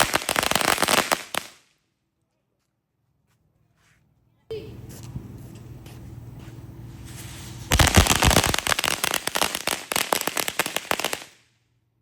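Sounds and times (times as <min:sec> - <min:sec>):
firework crackling pops: 0:00.0 - 0:01.7, 0:07.1 - 0:11.5.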